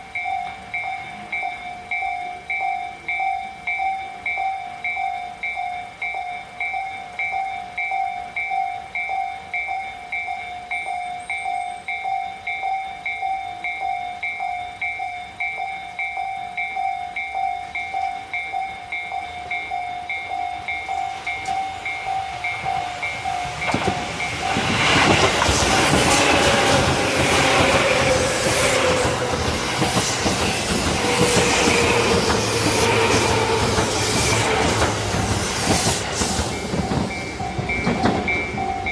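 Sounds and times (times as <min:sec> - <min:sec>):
level crossing bell ringing: 0:00.0 - 0:24.5, 0:36.6 - 0:38.9
train whine: 0:00.0 - 0:38.9
train rumble: 0:17.6 - 0:38.9
train wheels clattering: 0:20.6 - 0:38.9.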